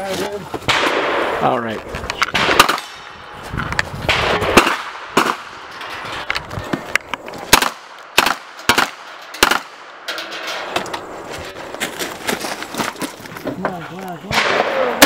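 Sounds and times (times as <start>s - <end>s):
single gunshots: 0.7s - 1.5s, 2.3s - 3.0s, 4.1s - 5.6s, 7.5s - 9.9s, 14.3s - 15.0s.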